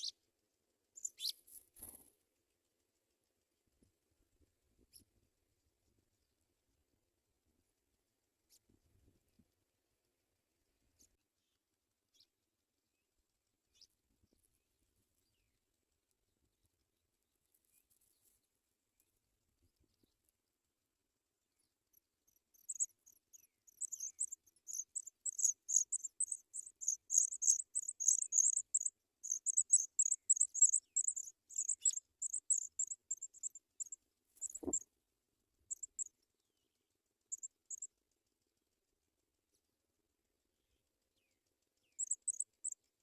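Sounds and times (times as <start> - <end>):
nestlings begging chirps: 1.0 - 1.4, 22.3 - 34.8, 35.7 - 36.1, 37.3 - 37.9, 41.9 - 42.8.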